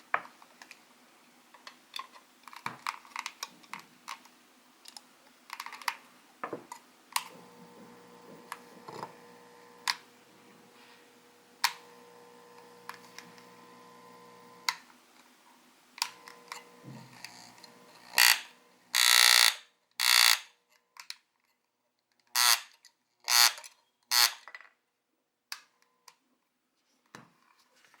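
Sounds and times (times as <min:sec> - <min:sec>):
electric massager humming: 0:07.2 - 0:14.8, 0:16.0 - 0:19.5
massager loud buzzing bursts: 0:07.3 - 0:14.7, 0:16.1 - 0:20.4.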